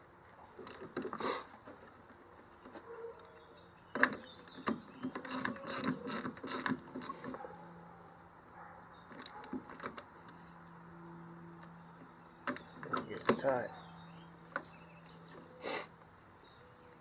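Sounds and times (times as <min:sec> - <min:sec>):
ratchet wrench clicking: 0:05.1 - 0:07.1.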